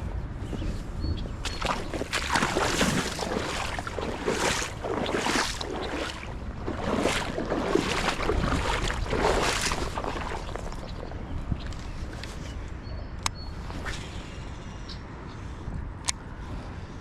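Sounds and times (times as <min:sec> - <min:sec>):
wind rumble on microphone: 0:00.0 - 0:17.0
water sloshing: 0:01.4 - 0:12.5.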